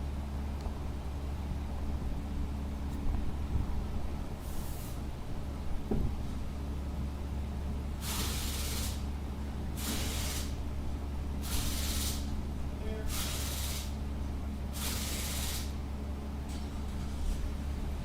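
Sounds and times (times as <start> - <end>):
steady low hum: 0.0 - 18.0
short bursts of hiss: 8.0 - 9.0, 9.8 - 10.5.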